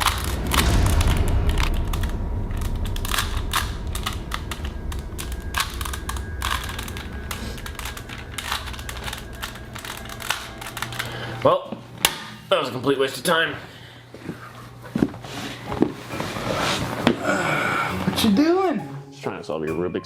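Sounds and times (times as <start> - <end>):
low rumble: 0.0 - 12.0.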